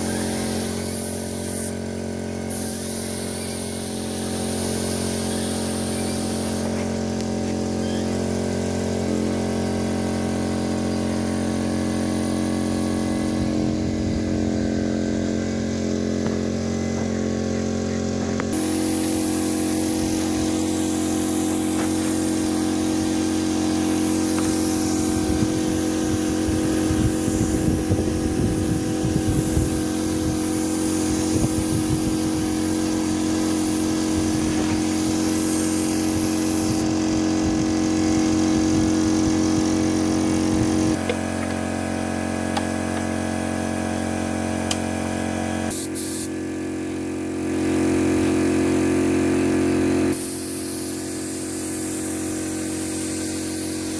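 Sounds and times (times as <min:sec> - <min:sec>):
machine hum: 0:03.2 - 0:45.7.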